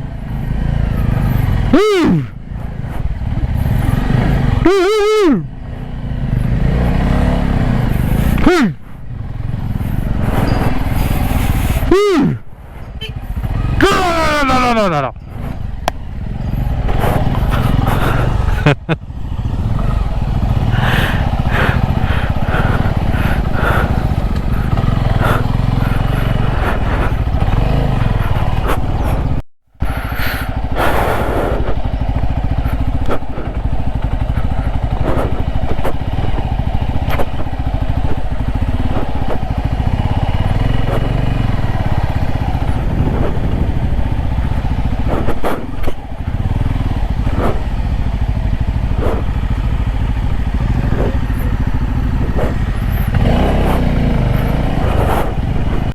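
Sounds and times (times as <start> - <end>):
motorcycle engine rumble: 0.0 - 55.9.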